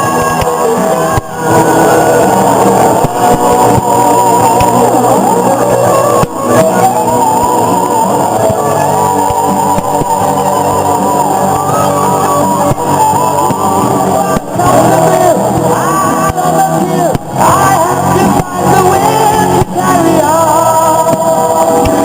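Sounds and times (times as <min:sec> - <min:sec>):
rock music with singing: 0:00.0 - 0:22.0.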